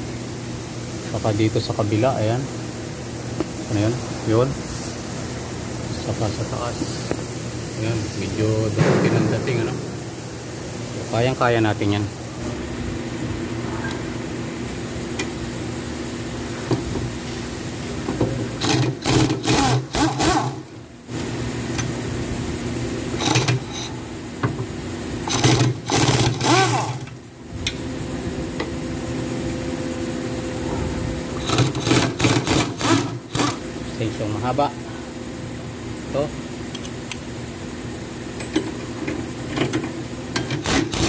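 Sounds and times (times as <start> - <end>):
steady mechanical hum: 0.0 - 41.0
impact wrench rattling: 18.6 - 20.6, 23.2 - 23.9, 25.2 - 27.1.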